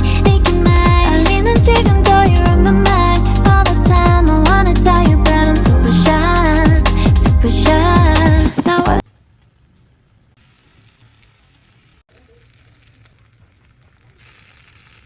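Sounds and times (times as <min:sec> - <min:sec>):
music: 0:00.0 - 0:09.0
food sizzling in oil: 0:10.4 - 0:15.0.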